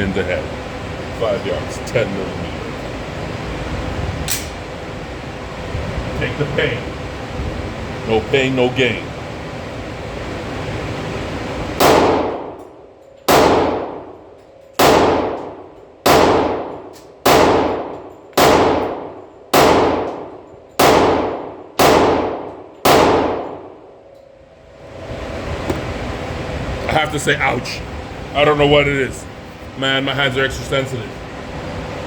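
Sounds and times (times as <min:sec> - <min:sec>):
pistol shots: 0:11.8 - 0:12.6, 0:13.3 - 0:14.2, 0:14.8 - 0:23.8.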